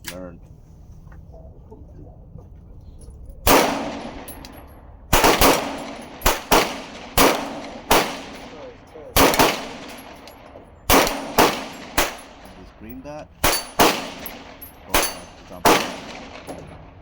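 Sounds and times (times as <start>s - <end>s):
pistol shots echoing: 3.4s - 17.0s.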